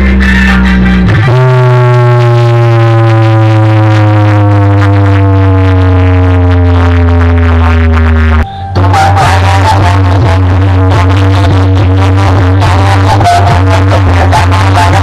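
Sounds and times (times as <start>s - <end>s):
synth tone sliding down: 0.0s - 14.1s
deep bass: 0.0s - 15.0s
loud electronic dance music: 0.0s - 15.0s.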